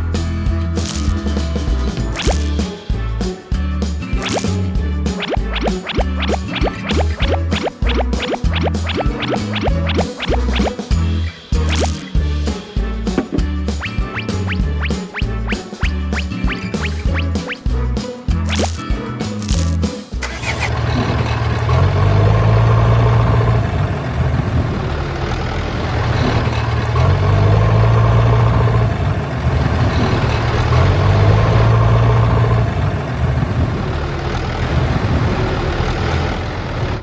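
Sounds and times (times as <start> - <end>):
engine starting and running: 20.2 - 28.0.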